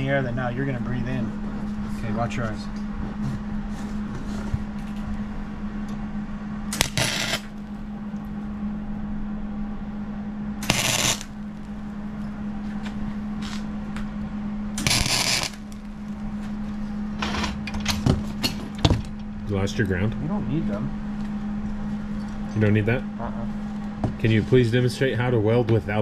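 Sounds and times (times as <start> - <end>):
welder low hum: 0.0 - 26.0
arc welding crackle: 6.7 - 8.5, 10.6 - 13.7, 14.7 - 16.5.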